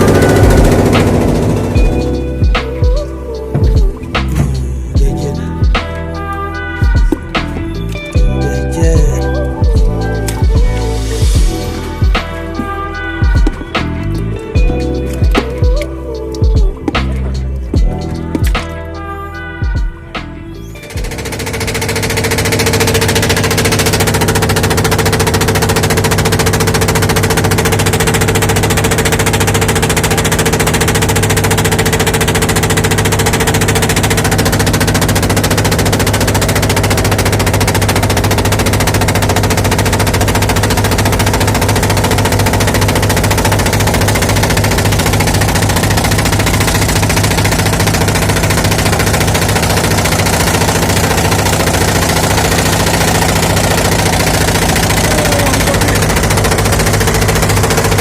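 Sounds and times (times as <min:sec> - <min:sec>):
small engine running: 0:00.0 - 0:05.7, 0:20.8 - 0:58.0.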